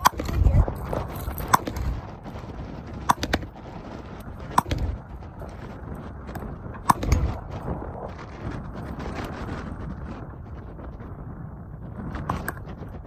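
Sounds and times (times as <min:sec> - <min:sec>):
gunshots: 0:00.0 - 0:02.2, 0:03.1 - 0:03.5, 0:04.5 - 0:05.0, 0:06.8 - 0:07.4.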